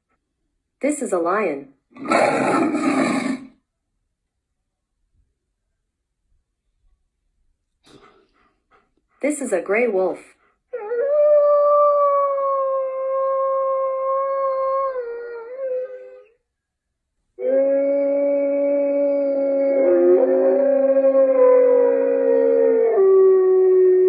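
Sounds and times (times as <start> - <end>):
wolf howling: 10.8 - 16.3, 17.4 - 24.0.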